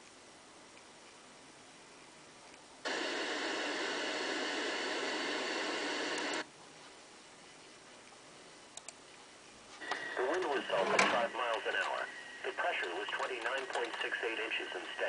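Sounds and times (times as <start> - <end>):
faint hiss: 0.0 - 15.0
radio static hiss: 2.8 - 6.5, 9.7 - 15.0.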